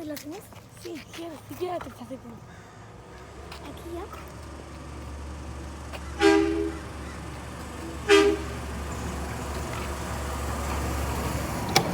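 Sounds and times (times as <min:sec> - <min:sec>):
idling engine rumble: 0:01.2 - 0:11.9
garbage truck horn honking: 0:05.2 - 0:11.9.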